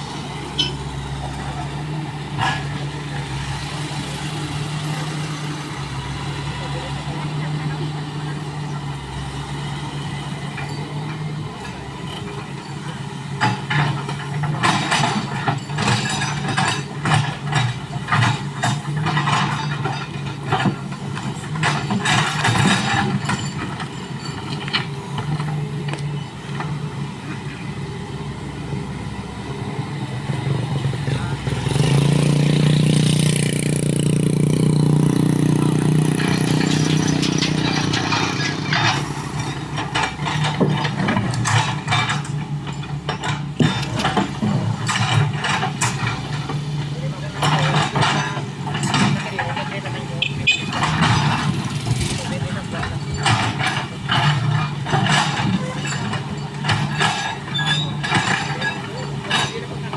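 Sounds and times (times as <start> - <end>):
diesel engine running: 0.0 - 59.9
sharp knocks and scrapes: 30.8 - 59.8.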